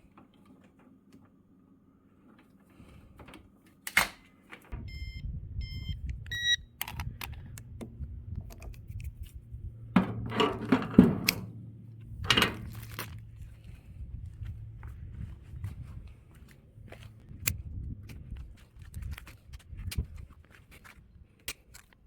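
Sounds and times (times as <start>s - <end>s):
low machine hum: 4.7s - 18.7s
electronic beeps: 4.8s - 6.7s
sharp clicks: 6.0s - 9.1s
knocking and rattling from handling: 9.9s - 13.2s.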